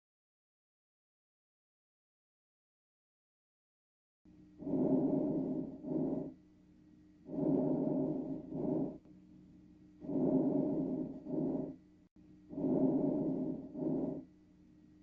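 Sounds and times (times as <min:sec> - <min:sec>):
faint steady hum: 0:04.3 - 0:15.0
breathing through a stethoscope: 0:04.6 - 0:06.3, 0:07.3 - 0:09.0, 0:10.0 - 0:11.8, 0:12.5 - 0:14.2.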